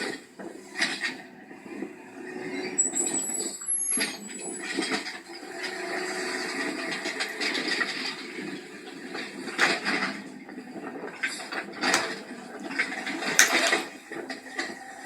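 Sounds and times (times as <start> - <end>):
garbage truck running and hissing: 0.0 - 15.0
high-pitched squeal: 1.0 - 8.7.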